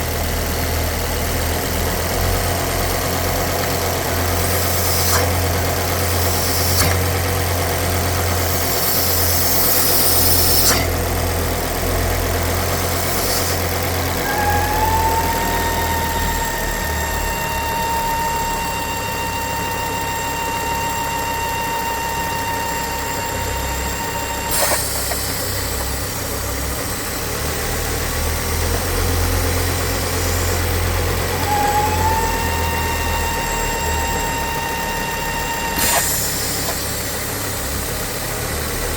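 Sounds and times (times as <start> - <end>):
car engine idling: 0.0 - 38.9
high steady whine: 0.8 - 38.9
click: 6.2 - 7.3, 19.5 - 26.0, 31.0 - 37.2.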